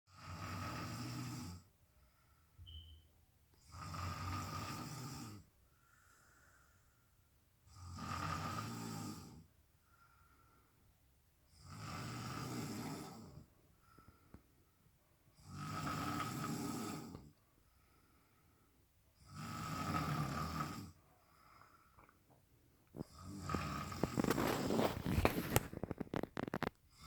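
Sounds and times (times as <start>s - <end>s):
snoring: 0.1s - 1.7s, 3.6s - 5.5s, 7.6s - 9.5s, 11.5s - 14.0s, 15.3s - 17.4s, 19.1s - 22.1s, 22.9s - 27.0s.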